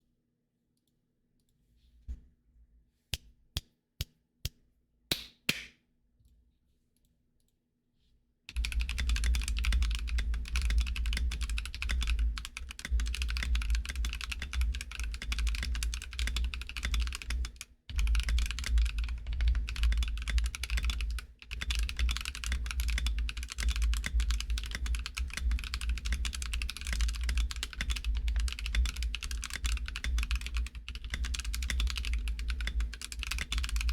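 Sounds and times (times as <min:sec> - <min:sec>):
mechanical keyboard typing: 0:08.5 - 0:33.9.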